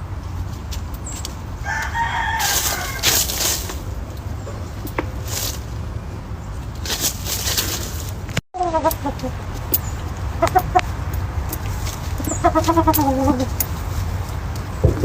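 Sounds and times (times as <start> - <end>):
steady low rumble: 0.0 - 15.0
chickens clucking: 8.6 - 15.0.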